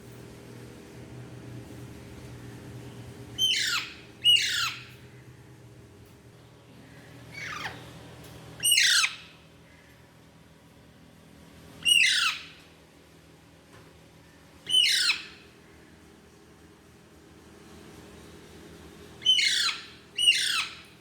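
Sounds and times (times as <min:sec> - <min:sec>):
parakeet squawking: 0:03.4 - 0:04.9, 0:07.4 - 0:07.8, 0:08.6 - 0:09.3, 0:11.9 - 0:12.4, 0:14.7 - 0:15.3, 0:19.2 - 0:20.8.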